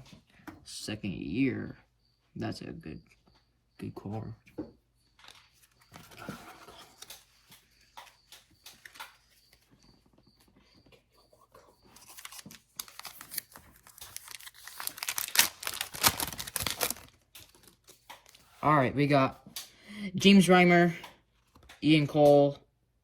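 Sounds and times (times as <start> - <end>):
foil wrapper tearing and crinkling: 12.0 - 18.4.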